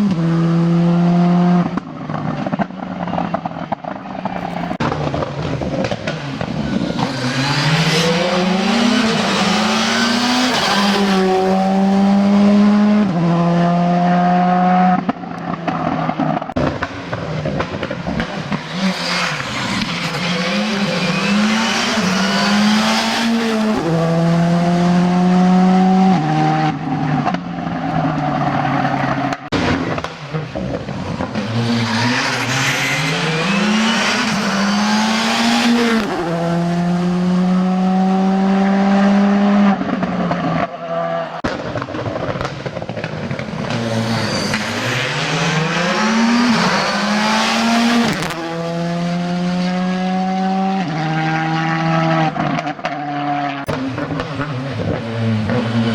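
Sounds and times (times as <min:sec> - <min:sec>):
rally car engine revving: 0:00.0 - 0:55.9
tyre squeal: 0:18.6 - 0:23.8, 0:43.7 - 0:48.3.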